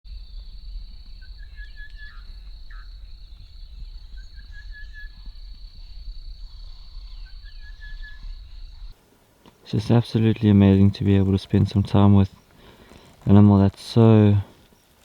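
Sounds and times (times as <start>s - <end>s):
insect trilling: 0.1s - 9.0s
low rumble: 0.1s - 9.0s.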